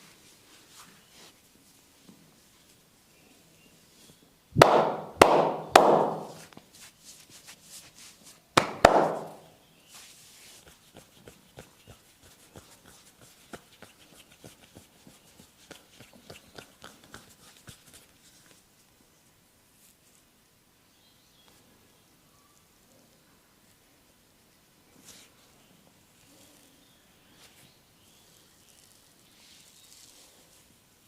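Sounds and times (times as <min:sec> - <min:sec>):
hand slaps on skin: 0:04.6 - 0:06.5, 0:08.6 - 0:09.4.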